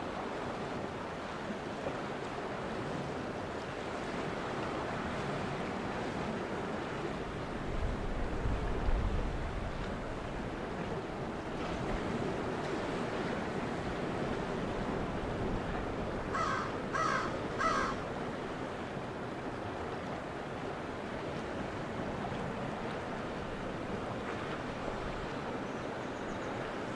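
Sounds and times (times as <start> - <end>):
ocean waves washing on shore: 0.0 - 26.9
bird harsh calls: 16.3 - 18.0.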